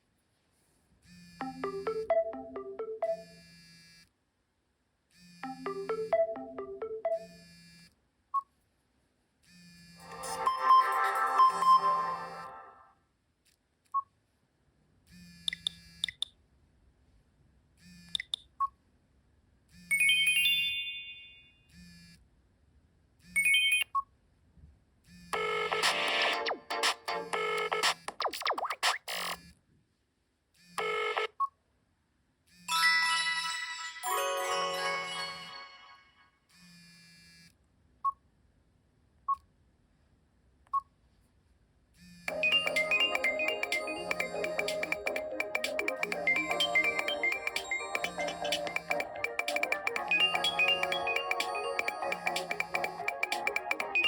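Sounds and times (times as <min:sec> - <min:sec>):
loud synthesized melody: 0:10.0 - 0:12.8, 0:25.8 - 0:27.9, 0:42.3 - 0:54.0
short electronic chimes and clicks: 0:42.3 - 0:54.0
soft electronic blips: 0:42.3 - 0:54.0.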